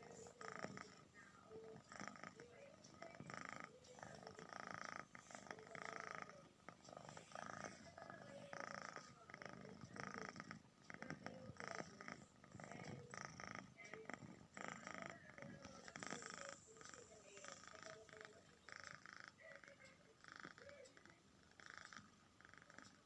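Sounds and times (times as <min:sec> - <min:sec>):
cat snoring softly: 0:00.0 - 0:23.0.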